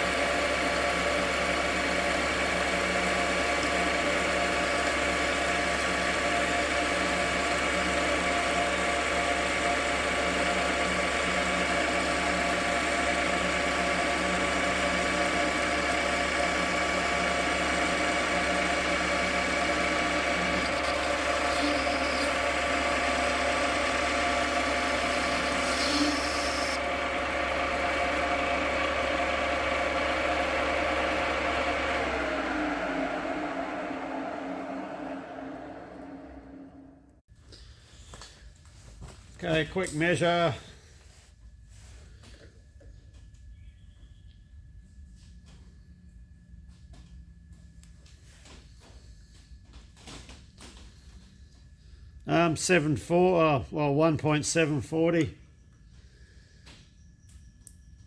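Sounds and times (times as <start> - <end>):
metal lathe whining: 0.0 - 37.0.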